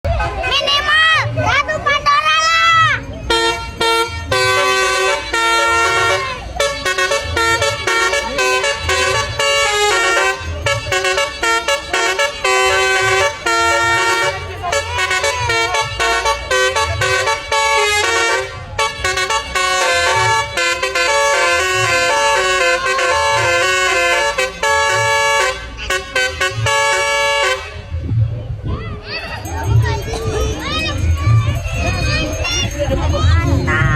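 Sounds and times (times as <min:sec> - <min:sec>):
low engine rumble: 0:00.0 - 0:33.9
musical bus horn playing a tune: 0:02.6 - 0:28.0.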